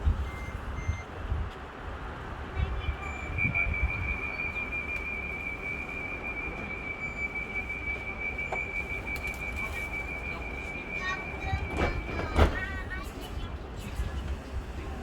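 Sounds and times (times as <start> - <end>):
continuous high-pitched warning tone: 2.9 - 12.6.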